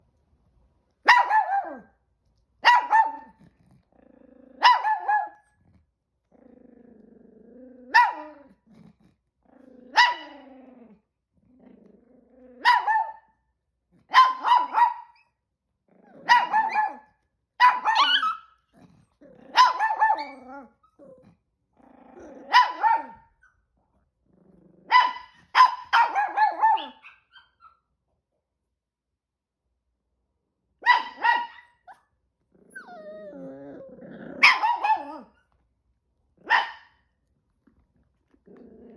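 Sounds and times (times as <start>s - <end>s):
small dog barking: 1.0s - 1.9s, 2.6s - 3.4s, 4.6s - 5.4s, 7.9s - 8.5s, 9.9s - 10.4s, 12.6s - 13.3s, 14.1s - 15.2s, 16.2s - 18.5s, 19.5s - 20.4s, 22.5s - 23.3s, 24.9s - 27.5s, 30.8s - 32.0s, 34.4s - 35.3s, 36.4s - 37.0s
dog growling: 3.2s - 4.7s, 5.5s - 12.7s, 18.7s - 23.2s, 24.2s - 24.9s, 32.5s - 35.3s, 37.7s - 38.9s.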